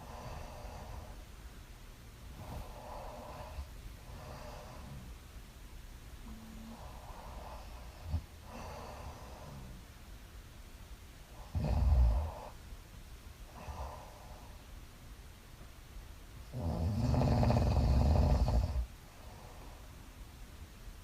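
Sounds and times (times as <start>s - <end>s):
woman snoring: 11.4s - 12.6s, 16.5s - 18.9s.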